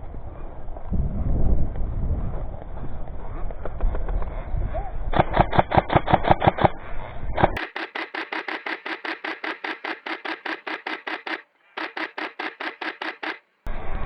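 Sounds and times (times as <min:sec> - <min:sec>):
airsoft gun firing full auto: 0:07.6 - 0:13.7.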